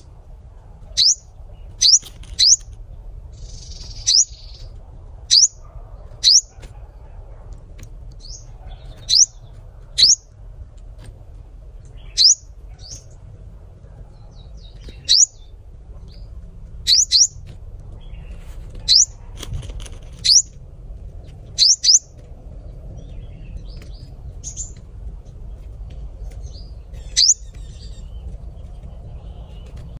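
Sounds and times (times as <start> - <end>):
low rumble: 0.0 - 29.9
bird calling high chips: 0.9 - 2.7, 3.4 - 4.7, 5.3 - 6.6, 8.2 - 10.2, 12.0 - 13.1, 14.6 - 15.5, 16.8 - 17.4, 18.3 - 19.2, 19.9 - 20.6, 21.5 - 22.2, 26.5 - 28.4.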